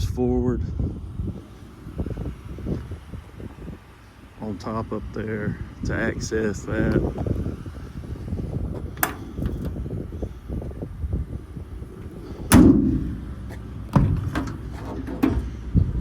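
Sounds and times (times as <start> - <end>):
low rumble: 0.0 - 16.0
metal latch clicking: 8.8 - 9.8, 12.5 - 13.2, 13.9 - 15.5
heavy metal thud: 12.3 - 15.6
sharp metal knocks: 12.5 - 13.3.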